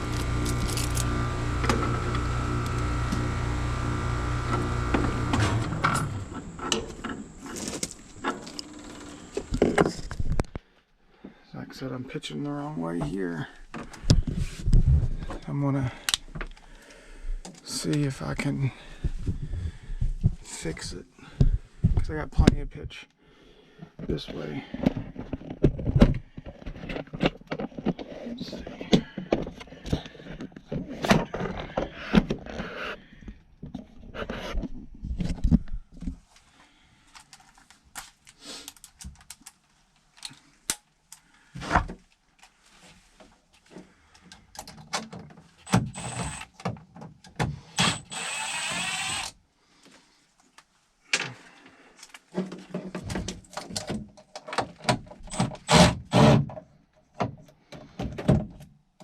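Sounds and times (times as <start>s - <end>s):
tools clicking and rattling: 0.0s - 1.9s.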